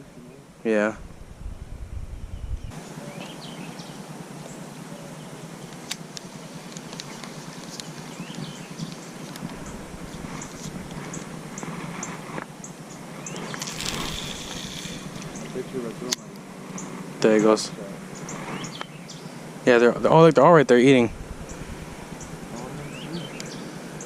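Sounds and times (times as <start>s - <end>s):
outdoor background noise: 0.0s - 24.0s
bird chirps: 1.9s - 5.8s, 7.0s - 19.4s, 21.4s - 24.0s.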